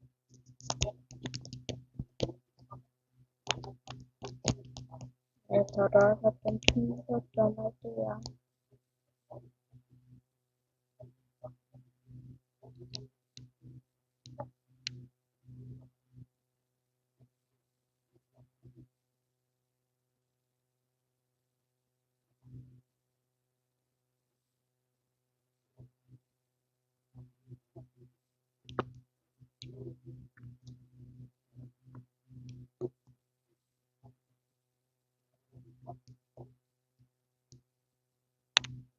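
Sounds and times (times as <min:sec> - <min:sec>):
small clicks of handled objects: 0:00.3 - 0:02.4.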